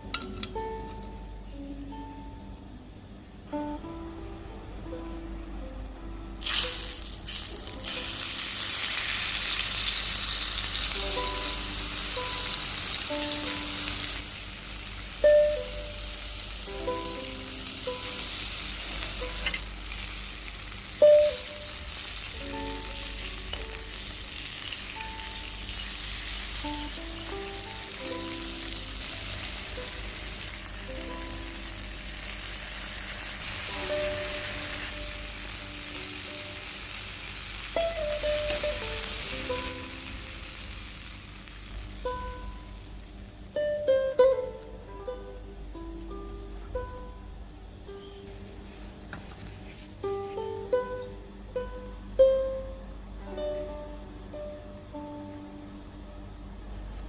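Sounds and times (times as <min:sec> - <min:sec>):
sizzle flares or knocks: 0:06.4 - 0:43.0
steak sizzling in a pan: 0:06.4 - 0:43.0.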